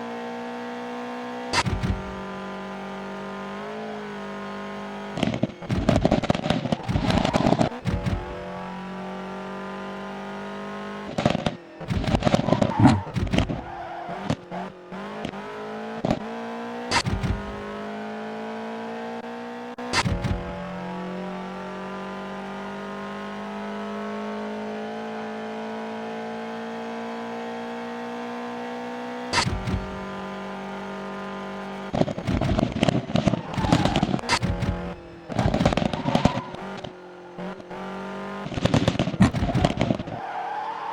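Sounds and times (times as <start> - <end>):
throttle blips revving engine: 0.0 - 40.9
car engine idling: 29.3 - 40.5.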